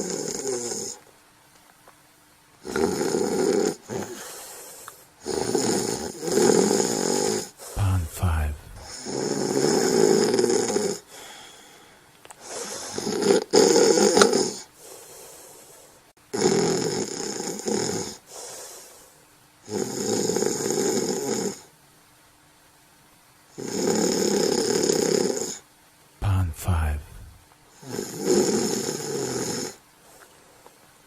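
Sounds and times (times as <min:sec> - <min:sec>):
person snoring: 0:00.0 - 0:01.0, 0:02.6 - 0:04.4, 0:05.2 - 0:11.8, 0:12.4 - 0:14.7, 0:19.7 - 0:21.6, 0:23.6 - 0:25.6, 0:26.2 - 0:29.8
quiet breaths: 0:00.0 - 0:01.1, 0:02.6 - 0:13.4, 0:14.1 - 0:16.2, 0:17.3 - 0:21.7, 0:26.2 - 0:31.0.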